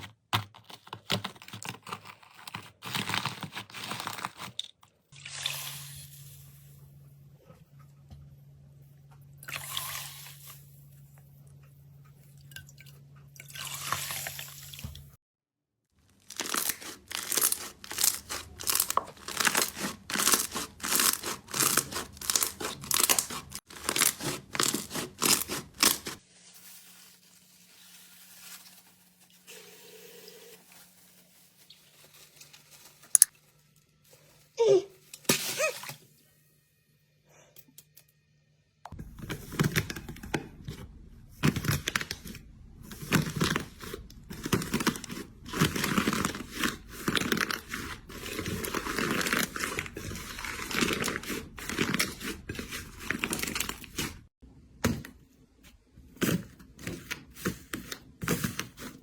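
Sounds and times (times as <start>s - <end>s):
crunchy slime being squeezed: 16.2s - 26.1s.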